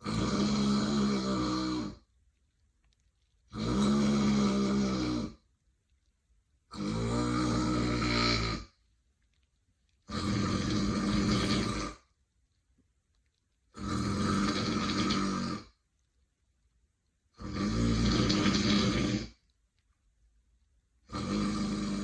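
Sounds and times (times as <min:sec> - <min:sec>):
woman snoring: 0:00.0 - 0:02.0, 0:03.6 - 0:05.4, 0:06.7 - 0:08.7, 0:10.1 - 0:12.0, 0:13.8 - 0:15.7, 0:17.4 - 0:19.4, 0:21.1 - 0:22.0.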